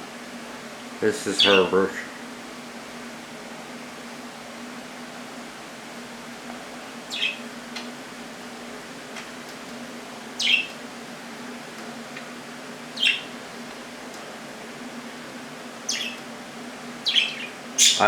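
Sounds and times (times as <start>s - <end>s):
faint steady hum: 0.0s - 18.0s
budgerigars chirping: 1.2s - 1.8s, 7.1s - 7.4s, 10.4s - 10.7s, 13.0s - 13.4s, 15.9s - 16.2s, 17.0s - 18.0s.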